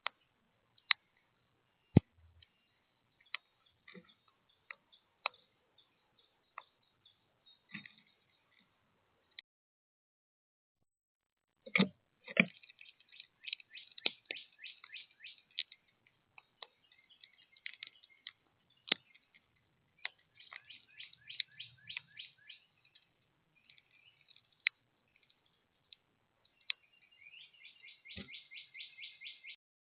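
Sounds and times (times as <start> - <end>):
small birds chirping: 0.0 - 9.4, 12.4 - 29.6
sharp clicks: 11.7 - 15.8, 16.4 - 19.4, 20.0 - 26.8.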